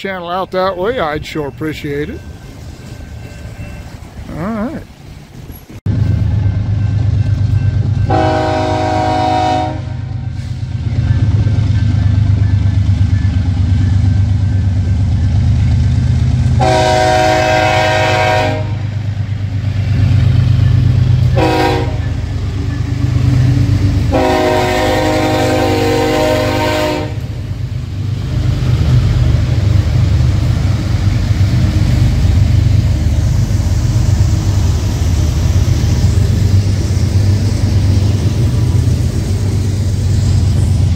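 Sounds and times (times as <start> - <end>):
diesel locomotives rumbling: 0.0 - 40.9
train horn blasts: 8.0 - 10.4, 16.6 - 19.0, 21.3 - 22.2, 24.1 - 27.4.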